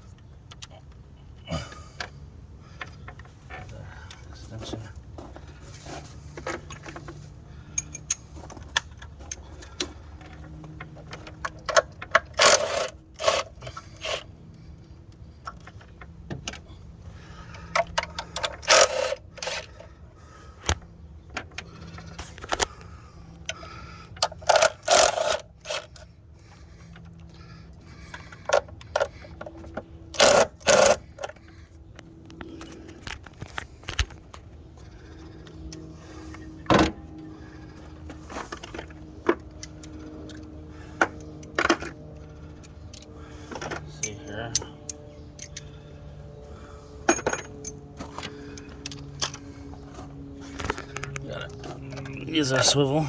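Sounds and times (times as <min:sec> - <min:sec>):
ratchet wrench clicking: 0:12.1 - 0:14.2, 0:18.4 - 0:19.7, 0:24.3 - 0:25.9, 0:30.2 - 0:31.1
metal tool clatter: 0:18.1 - 0:19.7, 0:24.2 - 0:26.0, 0:43.5 - 0:45.7, 0:47.1 - 0:47.8.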